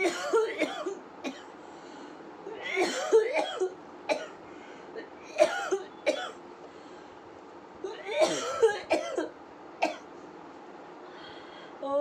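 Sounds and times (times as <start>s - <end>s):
woman coughing: 0.0s - 1.5s, 2.6s - 4.4s, 5.4s - 6.4s, 7.9s - 10.0s.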